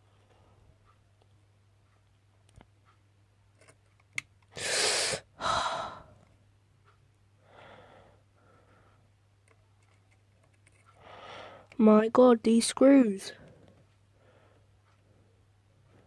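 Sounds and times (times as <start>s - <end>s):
person breathing out hard: 4.6s - 6.2s, 7.4s - 9.0s, 11.0s - 11.7s.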